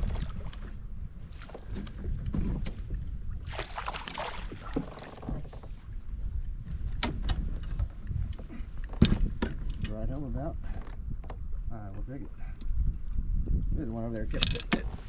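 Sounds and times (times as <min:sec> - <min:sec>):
water splashing: 0:00.0 - 0:00.6, 0:03.4 - 0:05.6
wind rumble on microphone: 0:00.0 - 0:15.0.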